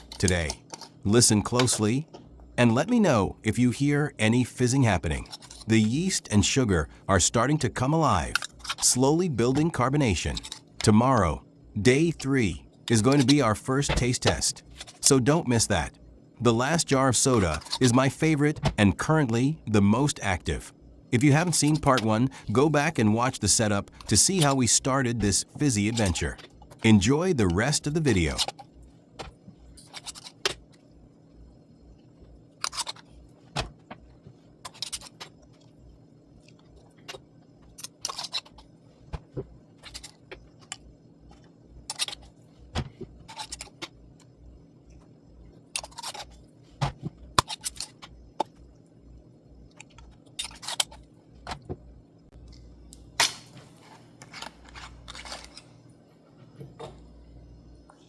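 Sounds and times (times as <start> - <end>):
steady low hum: 0.0 - 58.0
glass jars clicking and scraping: 37.8 - 38.7.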